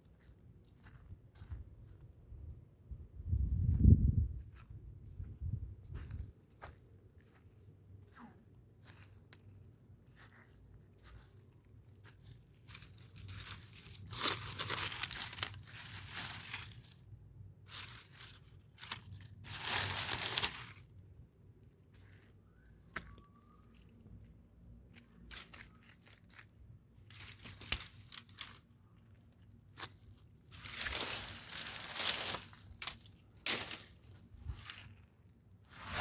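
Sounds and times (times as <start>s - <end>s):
dry material crumpling and tearing: 12.6s - 20.9s, 25.2s - 28.8s, 29.7s - 35.1s.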